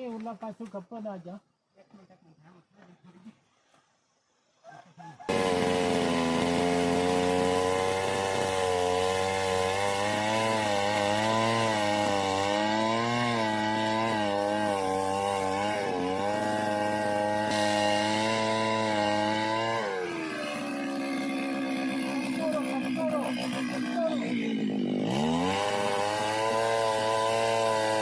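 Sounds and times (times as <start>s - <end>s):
chainsaw cutting wood: 5.2s - 28.0s.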